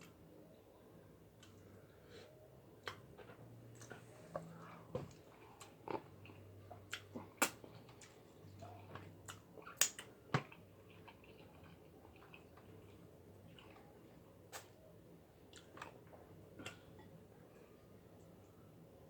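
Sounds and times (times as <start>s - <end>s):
chewing: 2.8s - 14.8s, 15.4s - 17.1s.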